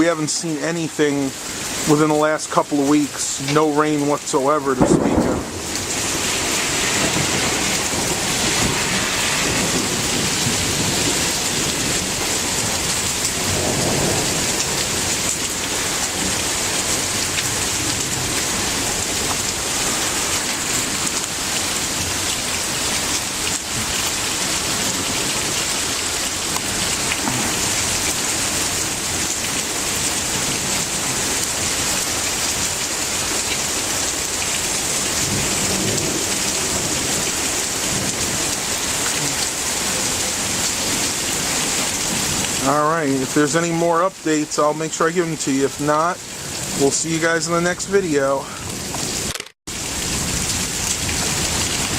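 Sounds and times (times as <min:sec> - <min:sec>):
heavy rain: 0:00.0 - 0:51.9
thunder rumbling: 0:04.5 - 0:31.4.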